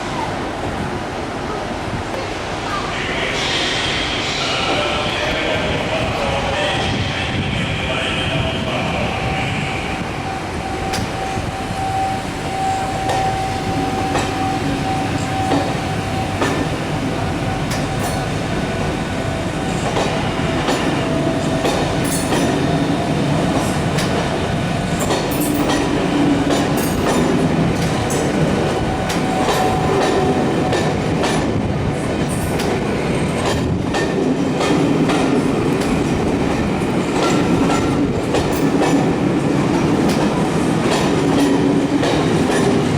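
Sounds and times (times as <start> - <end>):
train wheels clattering over rails: 10.3 - 42.9.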